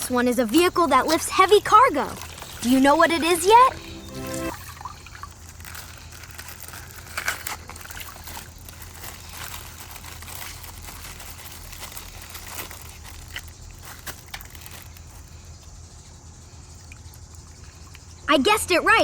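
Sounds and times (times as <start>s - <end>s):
water sloshing: 0.0s - 5.8s
plastic bag crinkling: 0.6s - 4.5s, 5.4s - 15.3s.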